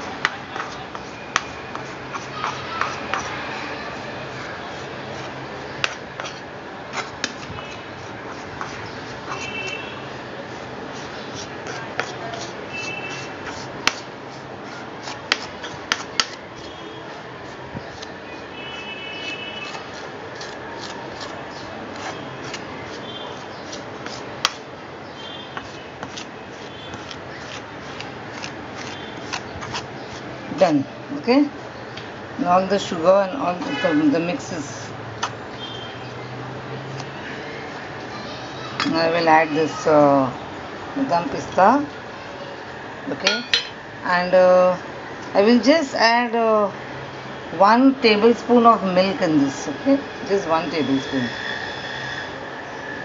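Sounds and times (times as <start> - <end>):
dry mixture scraped in bowl: 0.0 - 24.6, 25.5 - 30.6.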